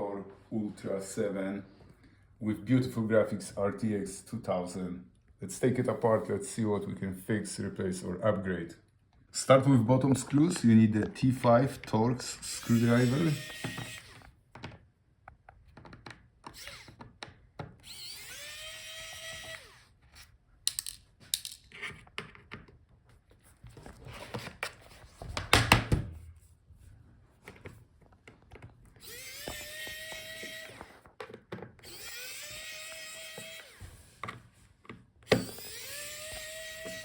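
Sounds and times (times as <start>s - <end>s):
electric screwdriver whirring: 12.4s - 14.3s, 16.4s - 17.1s, 17.8s - 20.3s, 29.0s - 31.1s, 31.8s - 34.2s, 35.3s - 37.0s.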